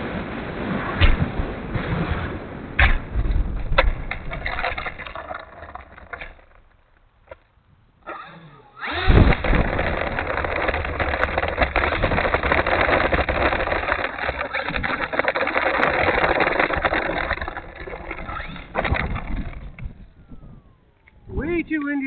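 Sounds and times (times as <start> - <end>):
strong wind gusting: 8.9 - 21.8.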